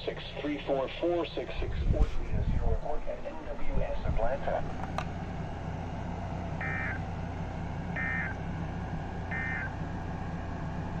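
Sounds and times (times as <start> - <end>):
radio hum and hiss: 0.0 - 5.0
high buzzy data tone bursts: 6.6 - 7.0, 9.3 - 9.7.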